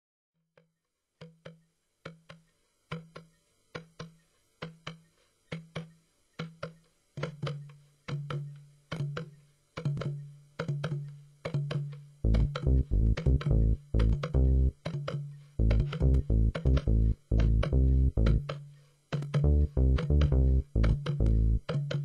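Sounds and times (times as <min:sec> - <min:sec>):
drum knocking strikes: 0:09.9 - 0:18.6, 0:19.2 - 0:22.0.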